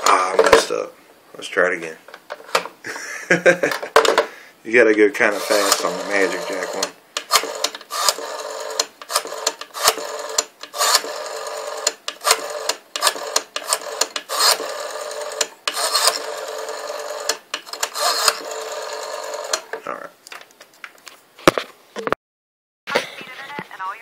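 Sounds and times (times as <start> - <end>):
rotary telephone dial clicking: 5.4 - 19.7.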